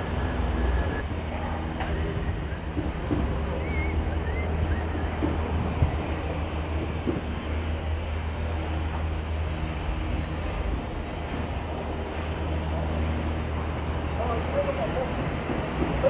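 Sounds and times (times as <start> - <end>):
street traffic rumble: 0.0 - 16.0.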